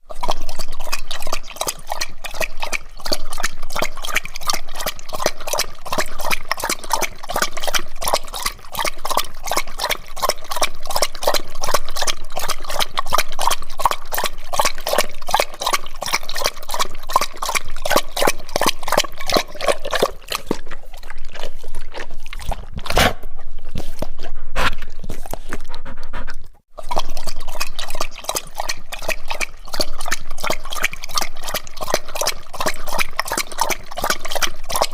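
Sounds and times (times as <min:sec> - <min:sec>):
dog lapping water: 0:00.0 - 0:34.9.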